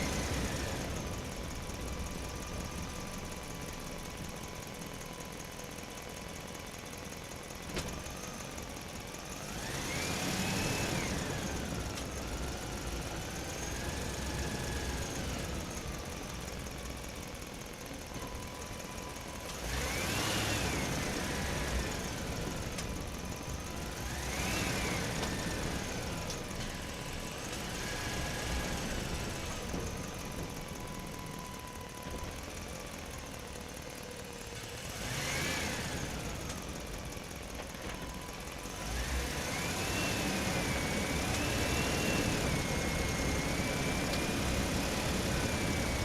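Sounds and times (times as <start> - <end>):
truck engine accelerating: 0.0 - 46.0
faint steady high tone: 30.0 - 33.5.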